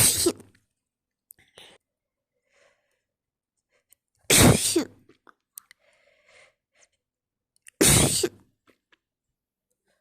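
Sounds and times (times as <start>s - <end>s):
woman sneezing: 0.0s - 0.4s, 4.3s - 4.9s, 7.8s - 8.4s
breath in: 5.7s - 7.0s.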